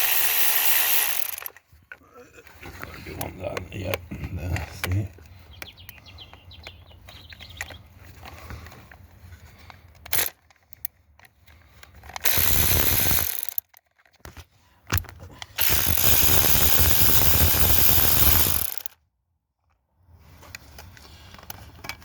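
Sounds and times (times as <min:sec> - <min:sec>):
power ratchet spinning: 0:00.0 - 0:01.6, 0:10.0 - 0:10.4, 0:12.0 - 0:13.7, 0:15.6 - 0:19.0.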